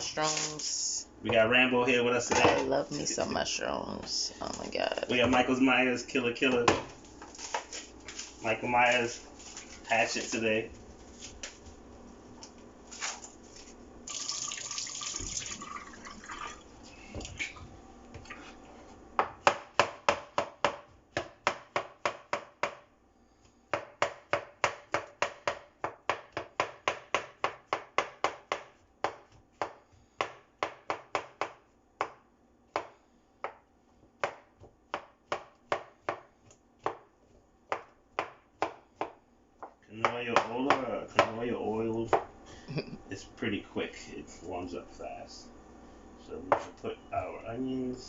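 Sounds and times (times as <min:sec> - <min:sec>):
knife chopping on cutting board: 0:19.2 - 0:22.9, 0:23.7 - 0:33.6, 0:34.2 - 0:37.1, 0:37.7 - 0:41.4.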